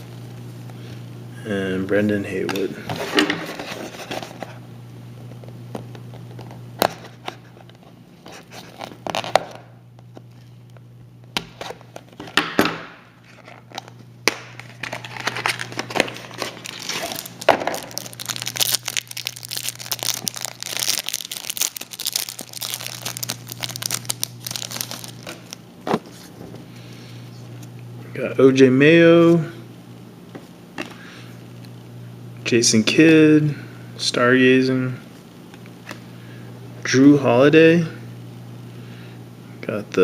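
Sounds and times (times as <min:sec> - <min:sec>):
cards rustling and clicking: 0:05.7 - 0:09.6, 0:13.2 - 0:26.4
wrapper crinkling and tearing: 0:08.3 - 0:09.6, 0:13.2 - 0:26.3.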